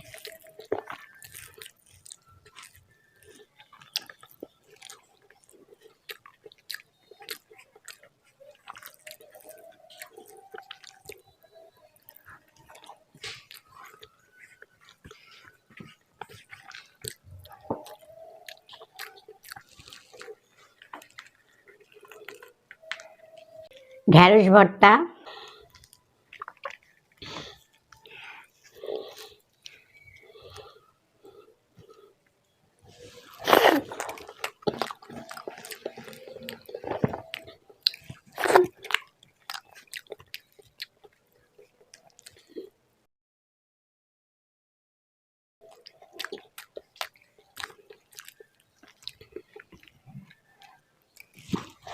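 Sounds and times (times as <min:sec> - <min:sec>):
squelching bites: 0:00.0 - 0:23.4, 0:33.0 - 0:41.2
chewing with wet mouth clicks: 0:00.0 - 0:24.0, 0:25.3 - 0:42.7, 0:45.6 - 0:51.9.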